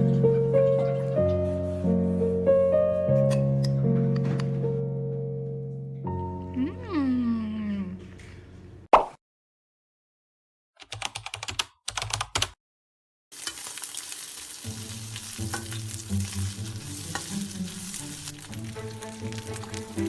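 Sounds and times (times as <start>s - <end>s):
food sizzling in a pan: 13.3s - 20.0s
spatula stirring in a pan: 13.4s - 20.0s.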